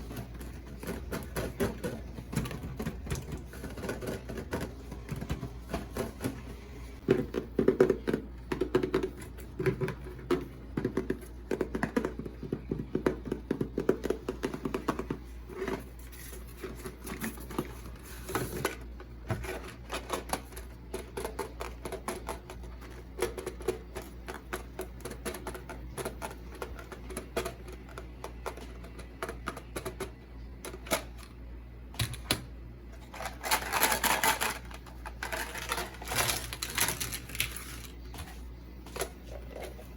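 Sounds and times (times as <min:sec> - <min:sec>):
low steady hum: 0:00.0 - 0:39.9
packaging rustle: 0:33.1 - 0:38.2.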